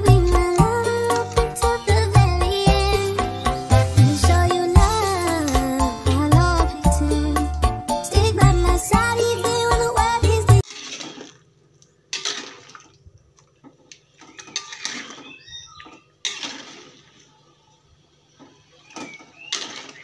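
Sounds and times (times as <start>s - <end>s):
water splashing and pouring: 10.6s - 13.6s, 14.2s - 15.4s, 16.2s - 17.3s, 19.5s - 20.0s.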